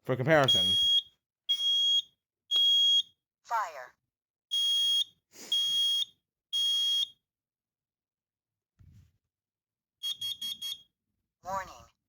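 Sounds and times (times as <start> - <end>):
alarm rapid short beeps: 0.5 - 3.0.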